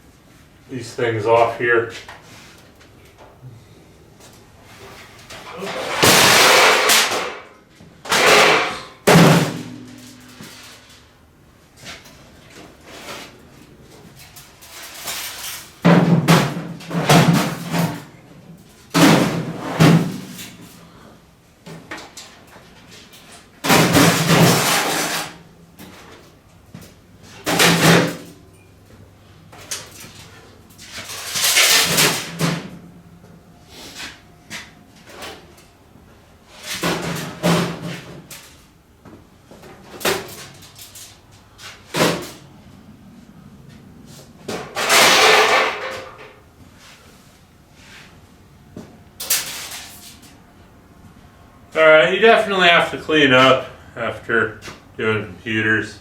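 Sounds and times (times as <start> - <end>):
steel panels clanking and scraping: 5.3 - 11.1, 23.2 - 26.1, 44.5 - 46.4.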